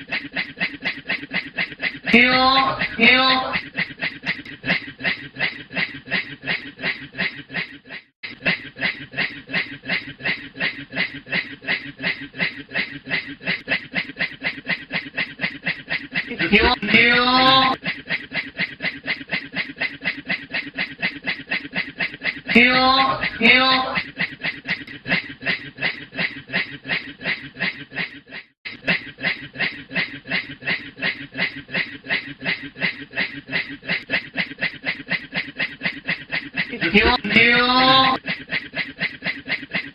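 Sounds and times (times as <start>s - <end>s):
man doing rhythmic laugh: 0.0s - 39.9s
man laughing rhythmically: 16.0s - 18.0s, 32.8s - 39.9s.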